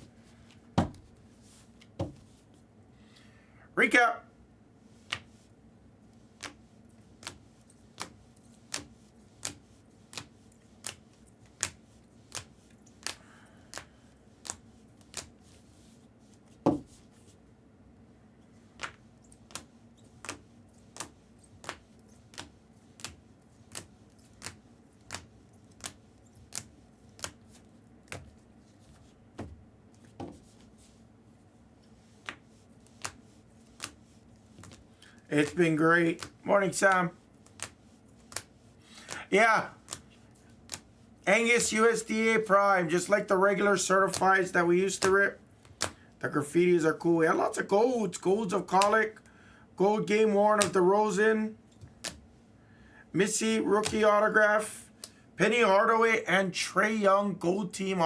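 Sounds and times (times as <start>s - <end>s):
cards clicking on a table: 21.0s - 27.4s.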